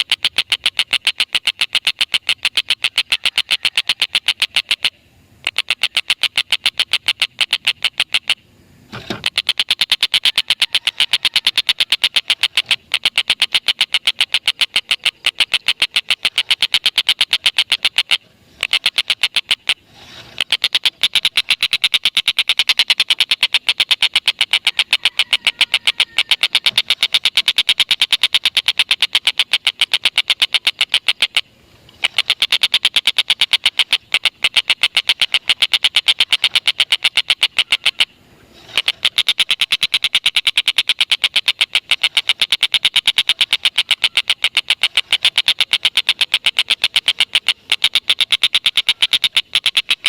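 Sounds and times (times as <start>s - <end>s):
kingfisher cackling call: 0.0s - 8.4s, 9.0s - 50.0s.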